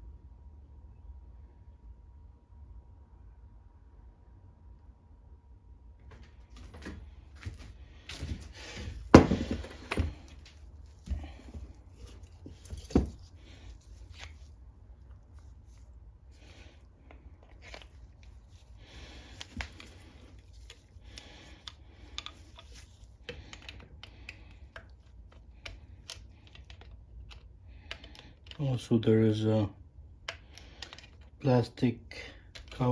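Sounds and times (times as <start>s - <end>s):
hands handling engine parts: 6.2s - 28.7s, 30.3s - 31.4s.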